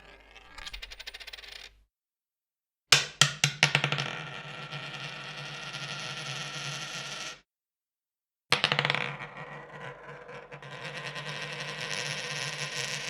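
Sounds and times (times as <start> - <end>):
coin rattling on hard surface: 0.5 - 1.8, 10.5 - 13.0
coin bouncing and ringing: 10.6 - 13.0.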